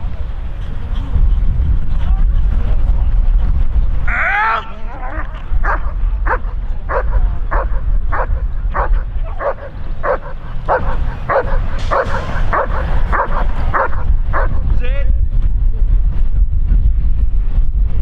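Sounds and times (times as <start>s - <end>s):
low rumble: 0.0s - 18.0s
dog barking: 5.6s - 14.6s.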